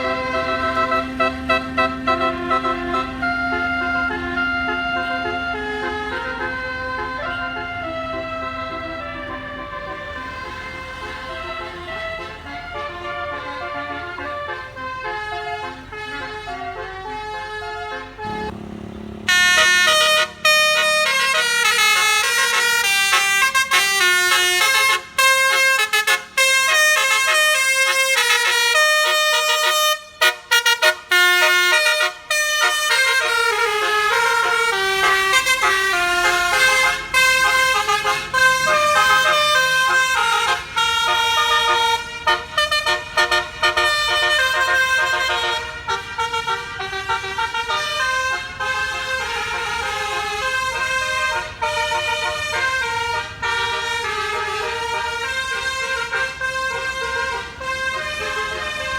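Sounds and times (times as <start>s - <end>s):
musical bus air horns: 0.0s - 58.9s.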